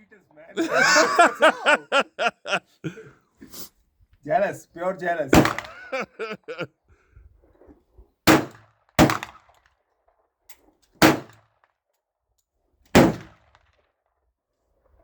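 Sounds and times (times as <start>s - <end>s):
pistol shots with ringing tail: 8.3s - 9.4s, 11.0s - 11.4s.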